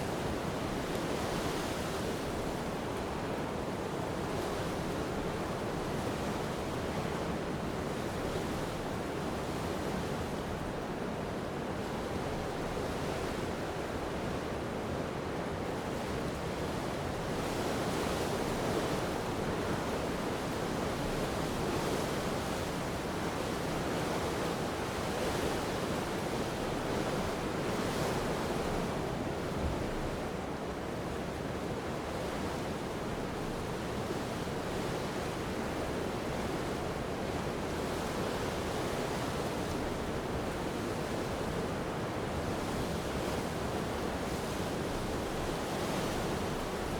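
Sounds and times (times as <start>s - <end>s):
surf washing on shore: 16.0s - 46.9s.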